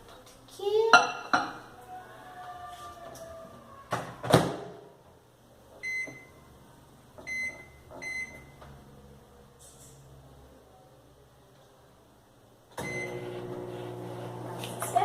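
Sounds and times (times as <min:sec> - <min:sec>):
high keypad beeps: 0:07.2 - 0:08.6.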